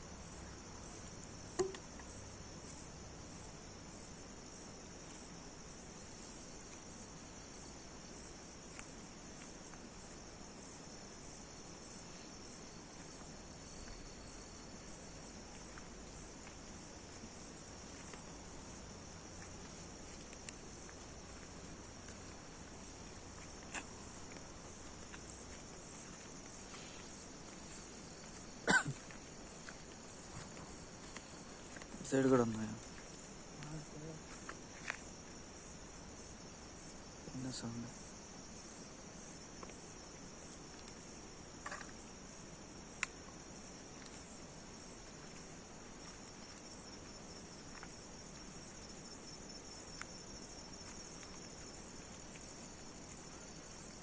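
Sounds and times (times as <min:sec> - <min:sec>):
insects chirping: 0:00.0 - 0:54.0
sharp knock: 0:01.6 - 0:01.8.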